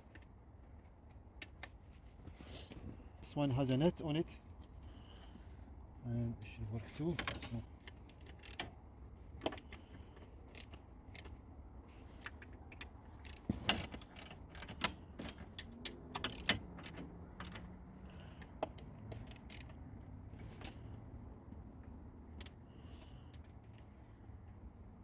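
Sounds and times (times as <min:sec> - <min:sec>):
ratchet wrench clicking: 0:08.1 - 0:08.7, 0:10.5 - 0:11.3, 0:13.2 - 0:14.9, 0:16.2 - 0:17.6, 0:19.1 - 0:19.8.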